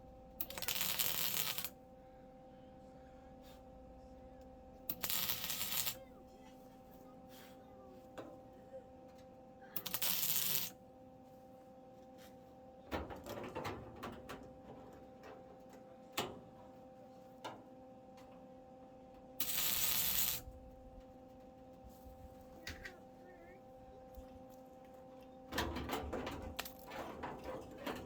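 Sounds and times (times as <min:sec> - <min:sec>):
steady electrical hum: 0:00.0 - 0:28.0
welding crackling hiss: 0:00.4 - 0:01.7, 0:04.9 - 0:06.0, 0:09.8 - 0:10.7, 0:19.4 - 0:20.5
metal clanks and knocks: 0:12.9 - 0:16.7, 0:25.5 - 0:28.0.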